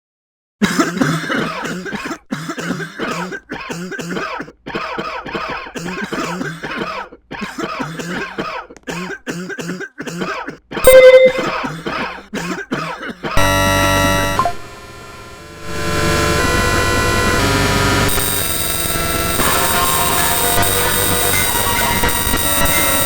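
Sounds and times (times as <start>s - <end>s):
person coughing: 0.6s - 13.4s.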